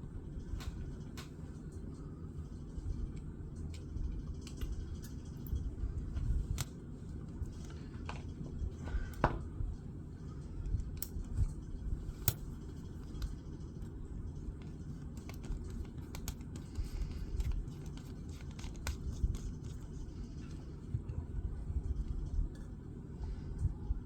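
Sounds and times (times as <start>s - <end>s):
flashlight parts clicking and tapping: 12.2s - 14.0s, 14.6s - 19.8s.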